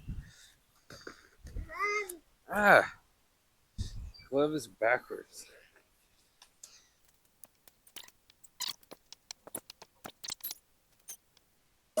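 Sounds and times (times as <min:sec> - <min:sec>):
gloved hands sticky clicks: 0:07.0 - 0:11.5.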